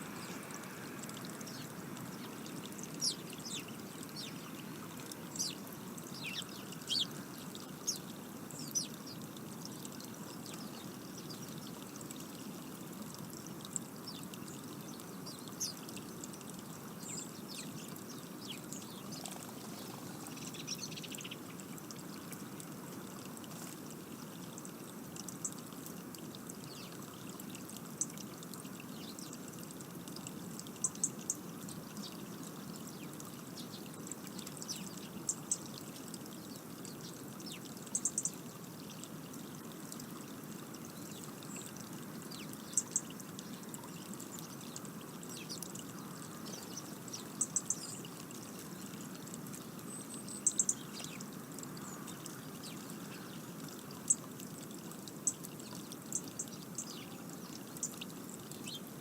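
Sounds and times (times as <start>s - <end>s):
small birds high thin calls: 0.0s - 12.0s, 14.0s - 22.6s, 30.8s - 39.6s, 40.8s - 49.0s, 49.6s - 54.3s, 55.2s - 59.0s.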